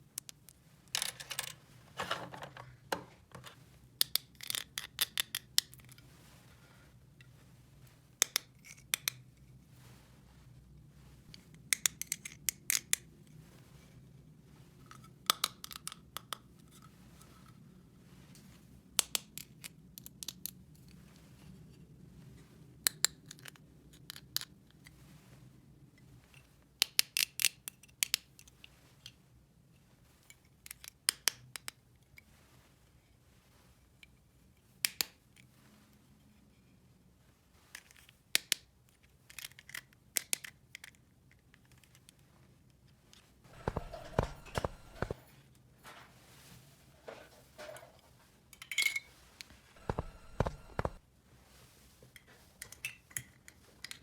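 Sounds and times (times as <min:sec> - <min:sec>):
toy pieces clicking and tapping: 0:04.0 - 0:05.8, 0:08.2 - 0:09.2, 0:11.8 - 0:13.0
faint low hum: 0:43.5 - 0:46.0, 0:49.7 - 0:51.0.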